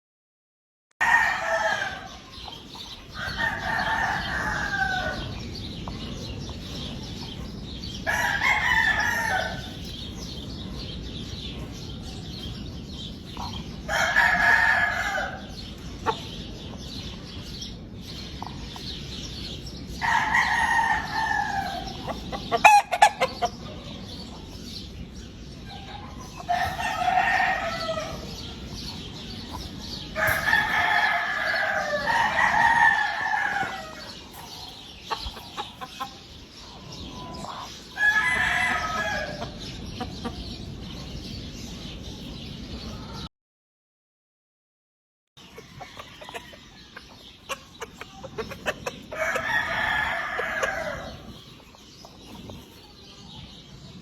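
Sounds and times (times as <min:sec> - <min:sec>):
roosters crowing: 0:01.0 - 0:06.0, 0:07.9 - 0:10.3, 0:13.0 - 0:17.0, 0:19.9 - 0:24.5, 0:25.2 - 0:40.6, 0:45.4 - 0:51.6.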